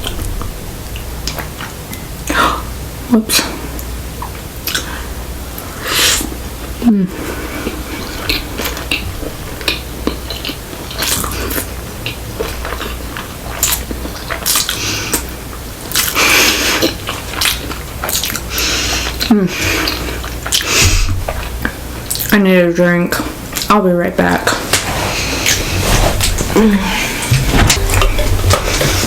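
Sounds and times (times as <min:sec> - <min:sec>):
chewing and biting: 0:07.6 - 0:15.3, 0:15.9 - 0:22.3
burst of noise: 0:26.2 - 0:29.0.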